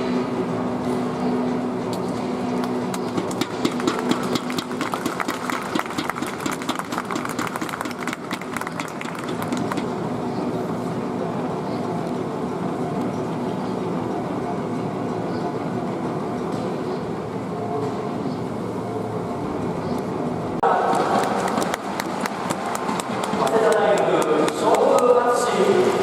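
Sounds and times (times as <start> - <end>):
crowd clapping: 2.6 - 9.9, 20.6 - 25.2
crowd hum: 16.6 - 26.0.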